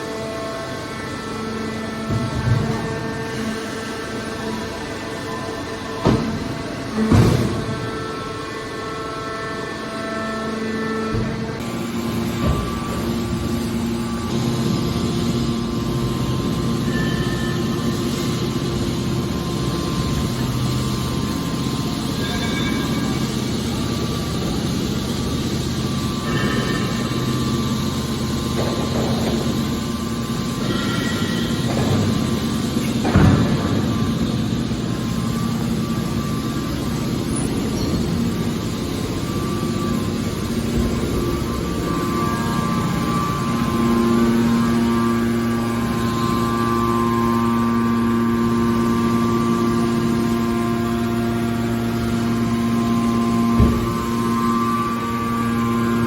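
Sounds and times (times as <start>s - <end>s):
hydraulic baler humming: 0.0s - 56.0s
heavy clunk: 6.0s - 8.1s, 30.6s - 34.7s.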